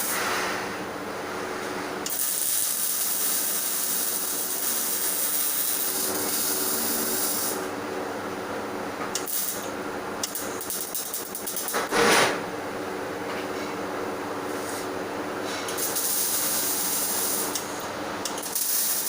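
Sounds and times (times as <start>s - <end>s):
welding arc hissing and crackling: 0.0s - 0.3s, 2.0s - 7.7s, 9.2s - 11.8s, 15.7s - 19.0s
low machine hum: 0.0s - 2.2s, 3.6s - 18.6s.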